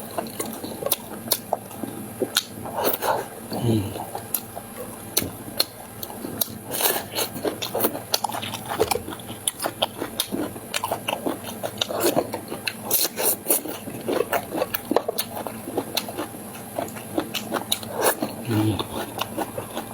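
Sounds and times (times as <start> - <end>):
person biting and chewing food: 0.0 - 19.9.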